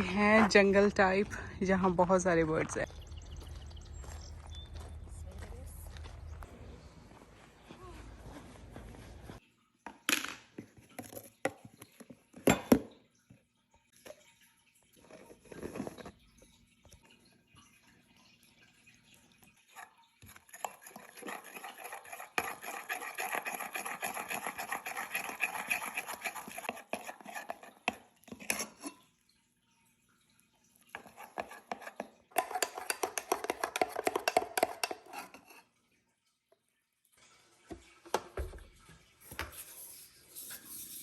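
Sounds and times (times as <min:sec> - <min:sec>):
utensil scraping cookware: 0:19.8 - 0:29.0, 0:30.9 - 0:35.7, 0:39.3 - 0:41.0.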